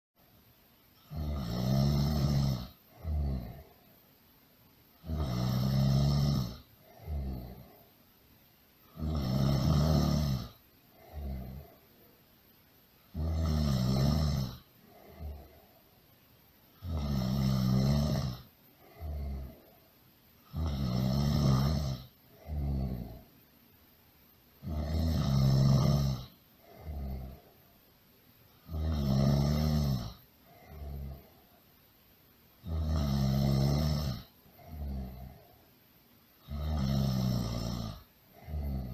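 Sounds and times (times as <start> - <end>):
loud snoring: 1.0 - 3.8, 5.0 - 7.9, 8.9 - 11.8, 13.1 - 15.7, 16.8 - 19.8, 20.4 - 23.3, 24.6 - 27.6, 28.6 - 31.4, 32.6 - 35.6, 36.4 - 38.9.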